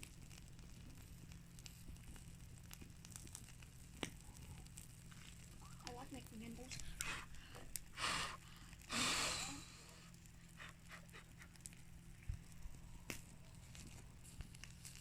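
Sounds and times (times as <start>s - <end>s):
wood fire crackling: 0.0s - 15.0s
strong breaths of air: 6.8s - 11.4s.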